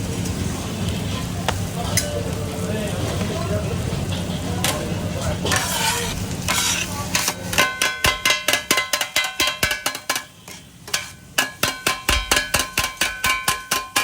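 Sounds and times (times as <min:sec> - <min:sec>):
food sizzling: 0:00.0 - 0:14.0
metal spatulas clanging on griddle: 0:04.1 - 0:14.0.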